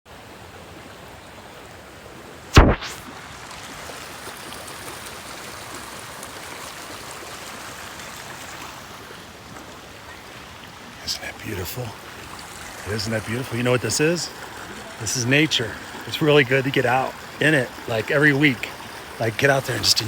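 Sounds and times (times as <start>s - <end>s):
running water rushing: 0.1s - 20.0s
loud thump: 2.6s - 3.0s.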